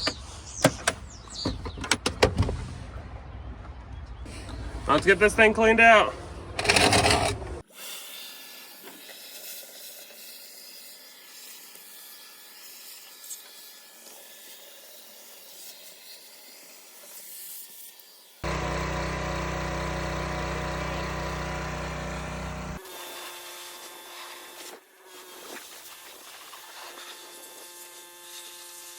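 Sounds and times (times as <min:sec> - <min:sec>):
deep motor hum: 0:18.4 - 0:22.8
shop vacuum sucking air: 0:18.4 - 0:28.9.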